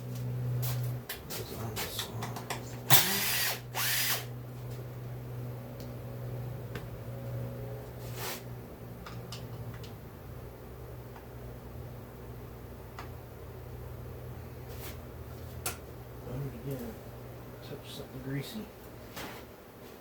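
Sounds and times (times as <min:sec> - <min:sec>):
power drill driver running: 0:02.9 - 0:04.3.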